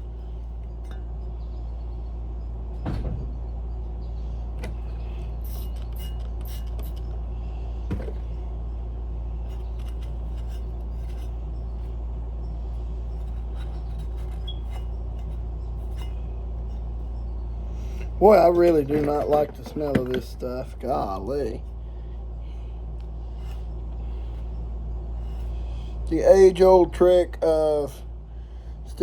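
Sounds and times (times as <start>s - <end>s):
steady low hum: 0.0s - 29.0s
rag rubbing metal housing: 4.6s - 7.2s, 9.4s - 27.2s.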